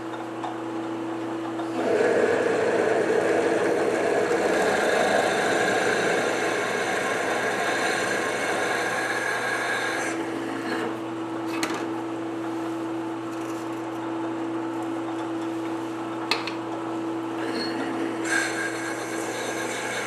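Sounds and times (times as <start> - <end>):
machine hum: 0.0 - 20.0
hissing cutting noise: 1.7 - 10.2.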